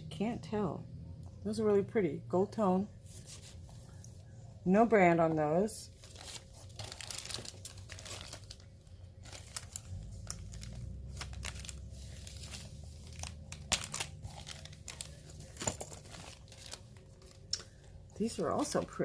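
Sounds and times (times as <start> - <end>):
packaging crinkling and rustling: 5.9 - 19.0.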